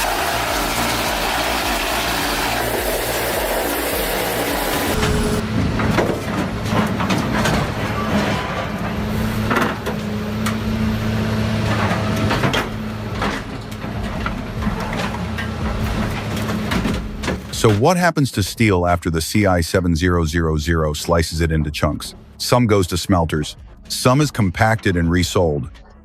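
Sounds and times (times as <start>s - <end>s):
shredding machine humming: 0.0s - 5.8s.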